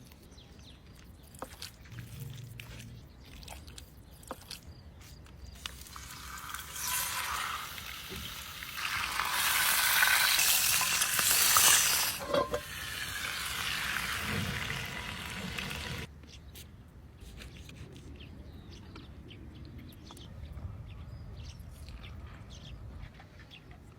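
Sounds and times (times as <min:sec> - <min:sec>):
food sizzling in a hot pan: 0:06.0 - 0:16.1.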